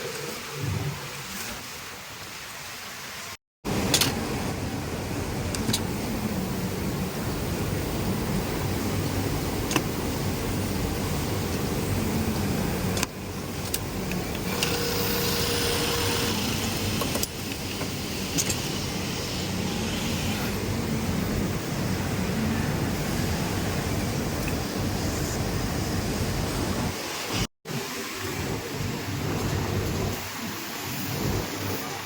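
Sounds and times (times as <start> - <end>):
industrial sewing machines running: 14.3 - 17.4.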